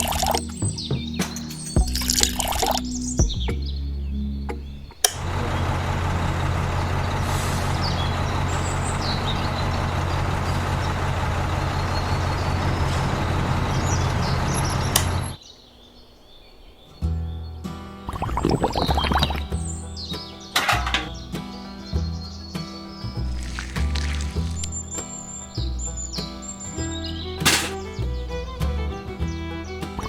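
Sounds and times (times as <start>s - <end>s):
vehicle engine running: 4.6s - 15.4s.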